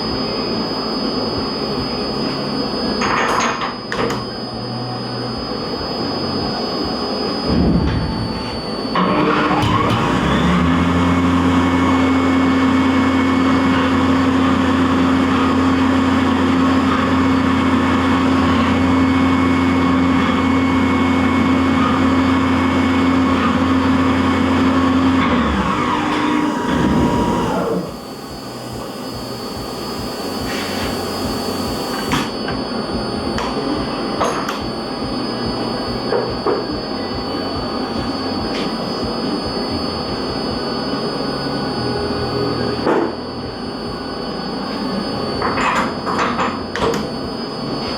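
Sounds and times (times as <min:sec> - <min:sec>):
machine hum: 0:00.0 - 0:47.9
milling machine cutting: 0:08.2 - 0:32.4.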